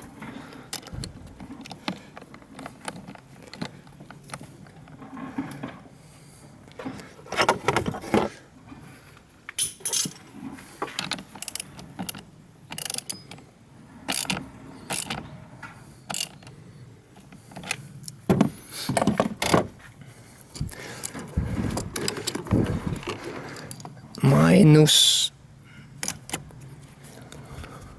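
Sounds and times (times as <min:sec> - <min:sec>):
metal tool clanking on metal: 0:09.6 - 0:10.3.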